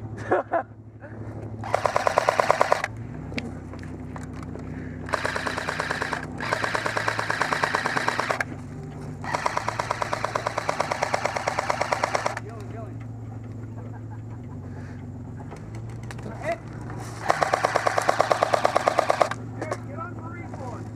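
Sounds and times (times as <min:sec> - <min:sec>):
truck engine humming: 0:00.0 - 0:20.9
airsoft guns firing full-auto: 0:01.6 - 0:02.9, 0:05.1 - 0:08.5, 0:09.2 - 0:12.5, 0:17.2 - 0:19.4.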